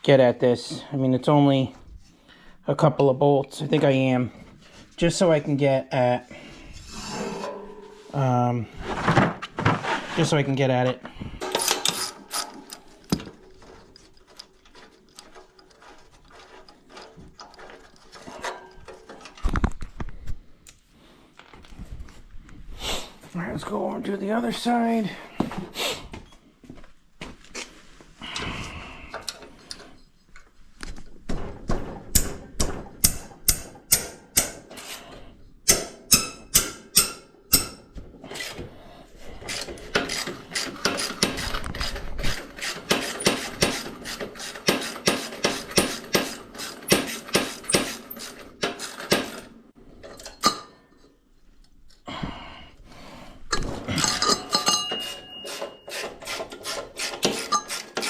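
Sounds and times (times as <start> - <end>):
tools clanking on metal: 6.9 - 19.6, 39.4 - 51.2, 53.5 - 58.0.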